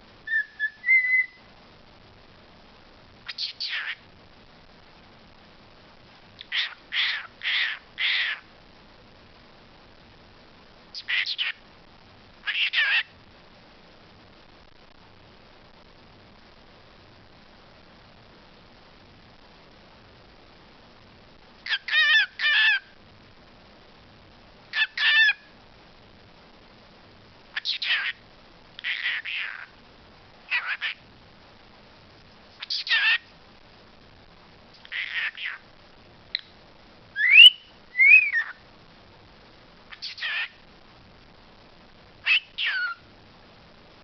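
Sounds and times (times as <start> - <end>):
talking bird calling: 0.3 - 1.4, 6.4 - 8.5, 28.8 - 29.7, 30.5 - 31.0, 32.6 - 33.3, 34.8 - 35.6, 37.2 - 38.6
talking bird whistling: 0.3 - 1.4, 37.2 - 38.6.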